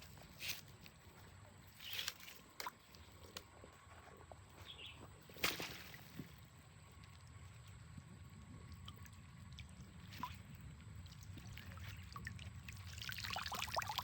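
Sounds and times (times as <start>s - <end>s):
low steady rumble: 0.0s - 14.0s
river water splashing: 8.8s - 14.0s.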